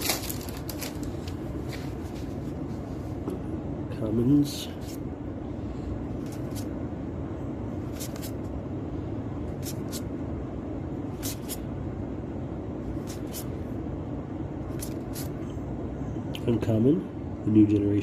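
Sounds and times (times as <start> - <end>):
steady low hum: 0.0 - 18.0
cards sliding paper swishes: 6.2 - 6.7, 7.9 - 8.5, 9.6 - 10.1, 11.2 - 11.6, 13.0 - 13.5.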